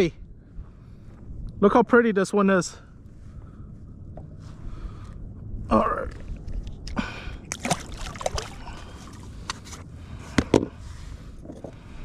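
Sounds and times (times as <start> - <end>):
water sloshing around a kayak: 6.2 - 9.8.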